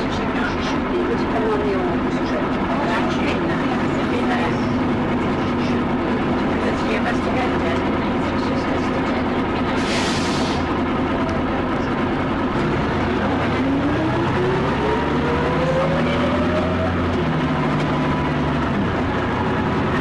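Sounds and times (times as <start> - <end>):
bus engine running: 0.0 - 20.0.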